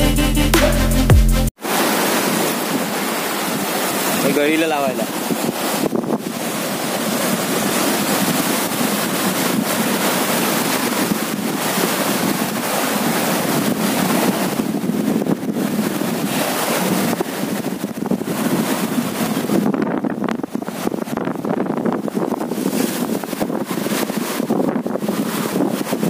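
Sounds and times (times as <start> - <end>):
surf washing against rocks: 1.6 - 26.0
wind on microphone: 1.7 - 26.0.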